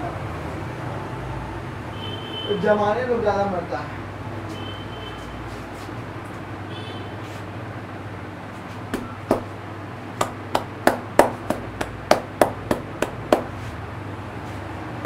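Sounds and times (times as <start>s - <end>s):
hands slapping a head: 8.9s - 9.5s, 10.2s - 13.7s.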